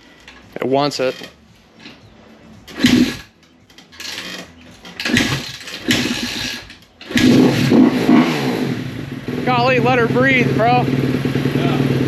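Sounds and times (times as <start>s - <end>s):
dirt bike engine sputtering and running: 2.7s - 3.3s, 4.0s - 12.0s.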